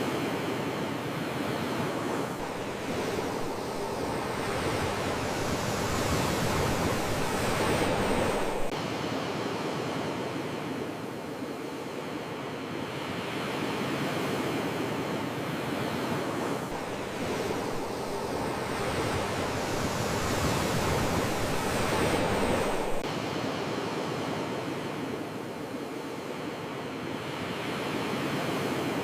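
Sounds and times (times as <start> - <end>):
sea waves washing in: 0.0 - 29.0.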